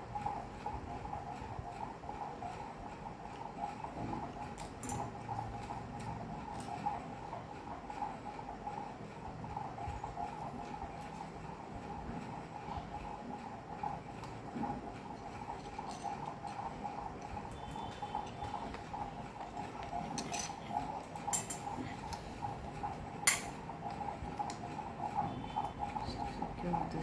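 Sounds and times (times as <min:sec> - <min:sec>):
steady background hum: 0:00.0 - 0:27.0
metal utensils clinking on a dish: 0:15.2 - 0:16.7, 0:19.8 - 0:22.0, 0:23.2 - 0:23.6.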